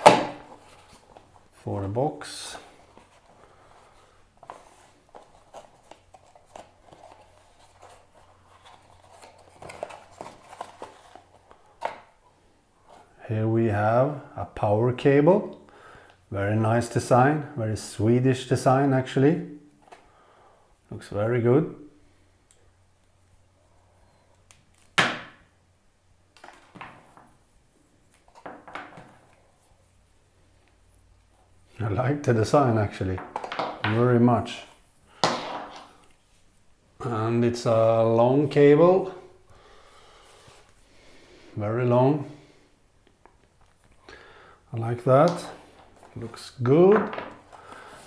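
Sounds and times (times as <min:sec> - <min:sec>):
cardboard packaging being handled: 0:02.6 - 0:12.1.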